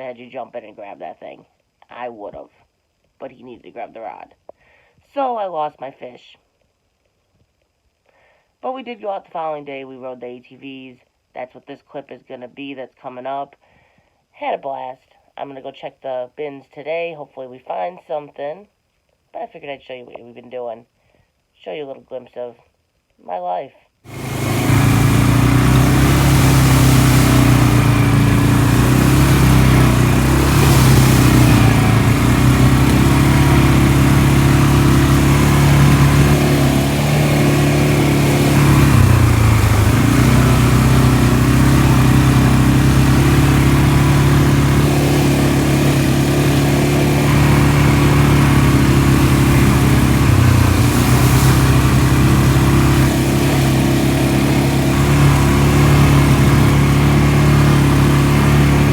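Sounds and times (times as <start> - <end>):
atv engine running: 24.1 - 58.9.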